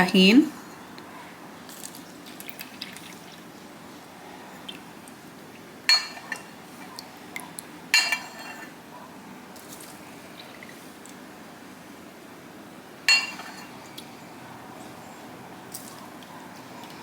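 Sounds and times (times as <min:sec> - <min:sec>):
kitchenware clinking: 0:05.9 - 0:06.5, 0:08.0 - 0:08.8, 0:13.1 - 0:13.8.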